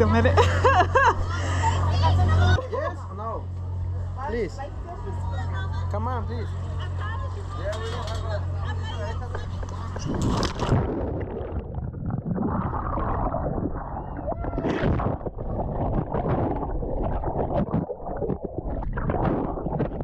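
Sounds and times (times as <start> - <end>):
underwater churning and bubbling: 9.8 - 20.0.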